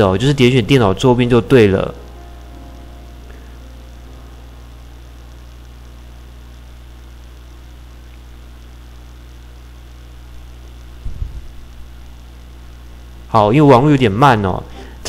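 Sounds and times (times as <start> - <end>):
background hiss: 0.0 - 15.0
low mains hum: 0.0 - 15.0.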